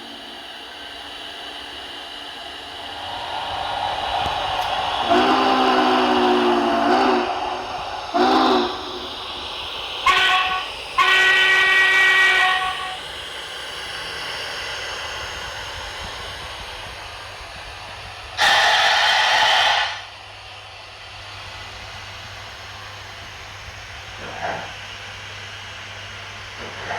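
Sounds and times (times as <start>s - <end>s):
steady locomotive hiss: 0.0s - 26.9s
chime steam whistle blasts: 4.6s - 13.2s, 18.4s - 20.1s.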